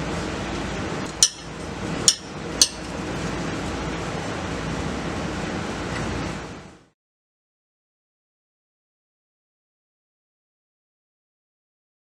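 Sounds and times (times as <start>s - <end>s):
steady background hum: 0.0s - 7.0s.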